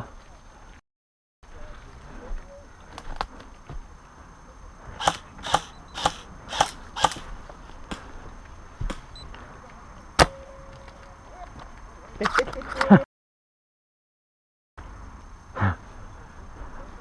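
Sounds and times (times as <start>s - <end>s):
sharp click: 5.0s - 7.2s.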